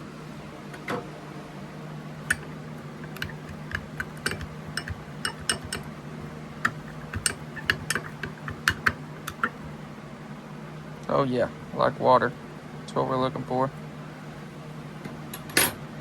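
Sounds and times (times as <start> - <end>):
steady low hum: 0.0 - 16.0
stirrer tapping against cup: 2.3 - 5.9, 6.6 - 9.6.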